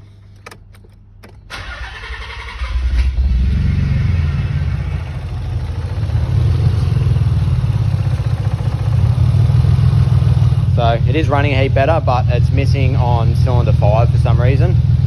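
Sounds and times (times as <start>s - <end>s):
misfiring car engine: 1.5s - 15.0s.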